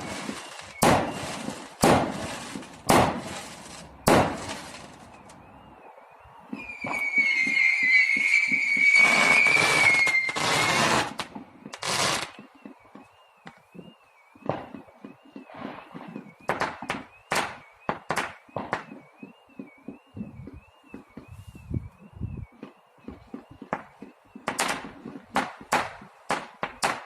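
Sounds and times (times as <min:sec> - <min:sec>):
firecracker cracks: 0:00.0 - 0:05.0
fireworks banging: 0:00.0 - 0:05.4, 0:06.5 - 0:21.4, 0:22.6 - 0:27.0
fireworks crackling: 0:00.0 - 0:05.4, 0:06.5 - 0:21.5
firework rocket whistle: 0:00.0 - 0:25.9.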